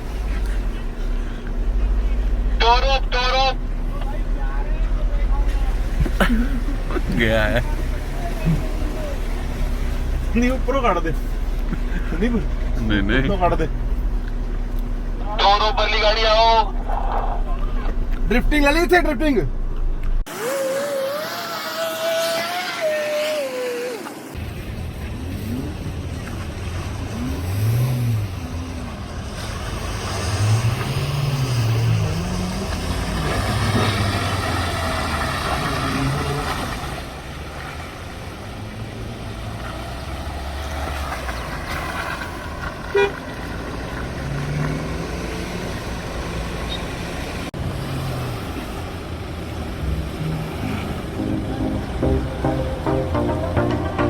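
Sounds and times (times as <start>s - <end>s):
off-road vehicle engines revving: 0.0s - 54.0s
car horn honk: 42.9s - 43.2s, 51.1s - 54.0s.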